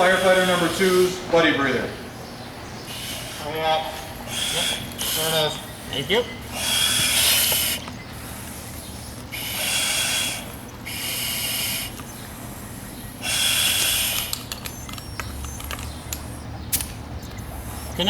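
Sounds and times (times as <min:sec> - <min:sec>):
breathing regulator hissing: 0:00.0 - 0:01.8, 0:02.8 - 0:16.8, 0:17.4 - 0:18.0
gear clicking and rattling: 0:13.3 - 0:18.0.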